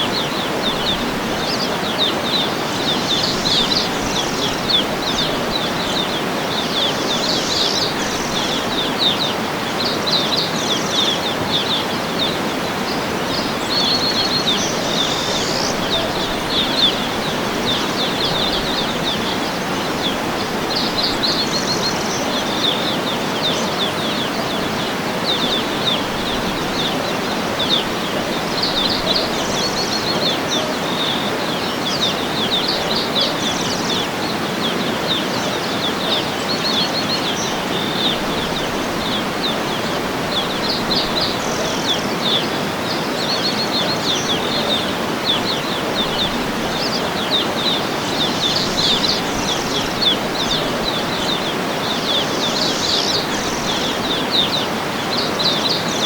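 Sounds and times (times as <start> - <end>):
birds chirping: 0.0 - 56.0
waterfall rushing: 0.0 - 56.0.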